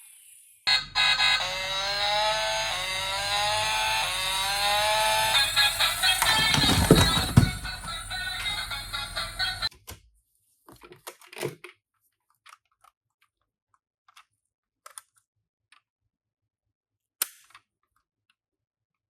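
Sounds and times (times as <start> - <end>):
toy cars clicking: 1.1 - 9.7.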